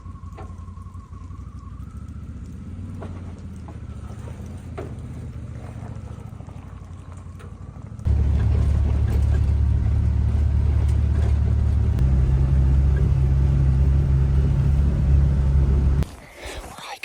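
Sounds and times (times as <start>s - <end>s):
faint wavering whine: 0.0s - 3.0s
vehicle engine rumbling: 0.0s - 16.7s.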